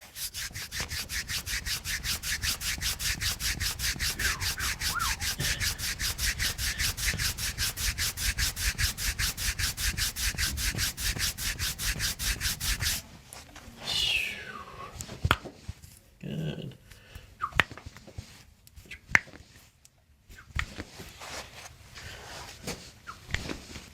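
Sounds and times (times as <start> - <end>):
hands rubbing bare feet: 0.0 - 13.0.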